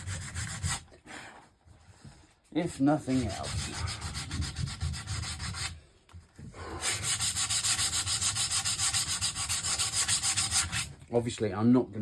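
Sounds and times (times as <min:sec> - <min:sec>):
sandpaper sanding wood: 0:00.0 - 0:00.9, 0:02.5 - 0:05.8, 0:06.8 - 0:10.9.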